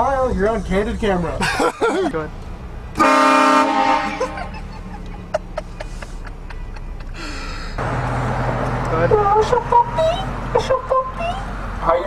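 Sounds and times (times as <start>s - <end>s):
train horn blasting: 3.0s - 4.2s
quiet snickering laughter: 4.2s - 7.2s.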